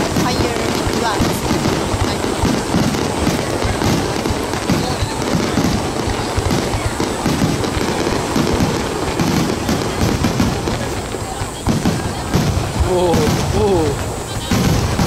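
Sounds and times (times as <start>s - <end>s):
fireworks booming: 0.0s - 15.0s
steady rumbling: 0.0s - 15.0s.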